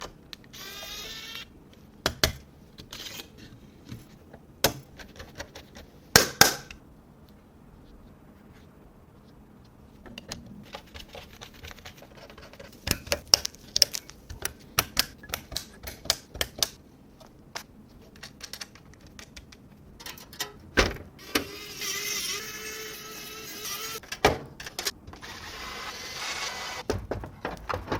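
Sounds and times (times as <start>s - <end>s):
small electric motor whine: 0.5s - 1.5s, 21.2s - 24.0s, 25.2s - 26.8s
clicks and clacks of parts: 10.0s - 20.6s.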